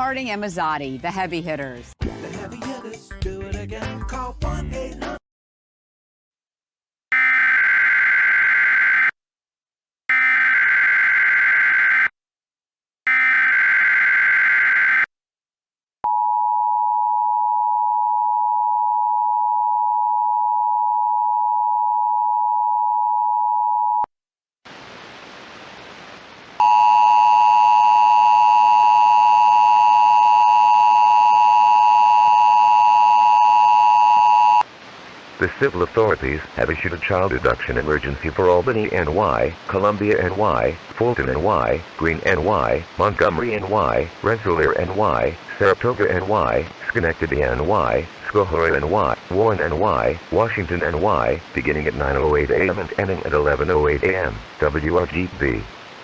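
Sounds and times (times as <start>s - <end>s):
static hiss: 24.7s - 26.6s, 34.7s - 56.0s.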